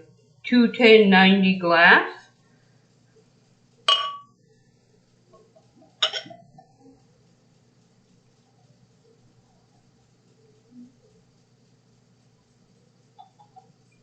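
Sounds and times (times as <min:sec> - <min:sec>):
glass clinking: 0:03.9 - 0:04.3, 0:06.0 - 0:06.8.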